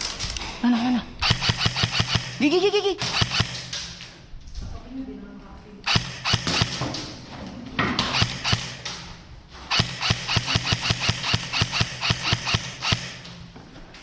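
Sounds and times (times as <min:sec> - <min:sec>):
airsoft gun shots: 0:01.2 - 0:02.4, 0:03.0 - 0:03.7, 0:05.9 - 0:07.0, 0:08.0 - 0:08.9, 0:09.7 - 0:13.2.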